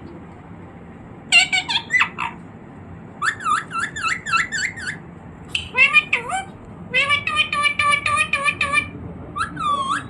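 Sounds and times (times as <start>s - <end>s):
parrot chirping: 1.3s - 2.4s, 3.2s - 10.0s
parrot squawking: 1.3s - 2.4s, 3.2s - 10.0s.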